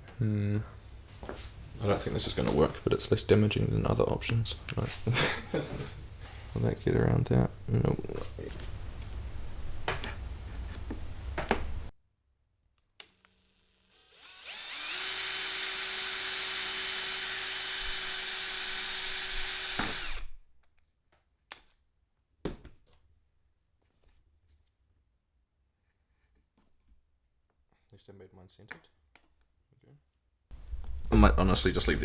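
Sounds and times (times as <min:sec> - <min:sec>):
power drill drilling into wood: 0:13.7 - 0:20.3.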